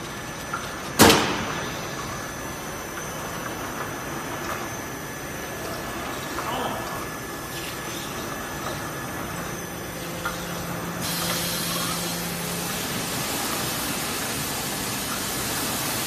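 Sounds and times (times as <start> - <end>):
low machine hum: 0.0 - 16.0
water spraying hiss: 10.9 - 16.0.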